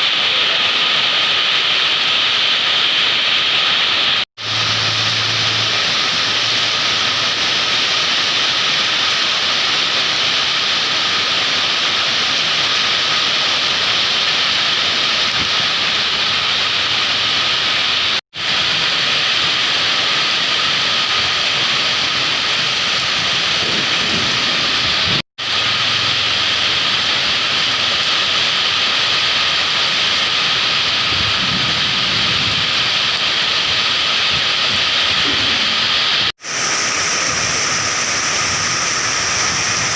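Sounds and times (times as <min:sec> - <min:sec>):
heavy rain hissing: 0:00.0 - 0:39.9.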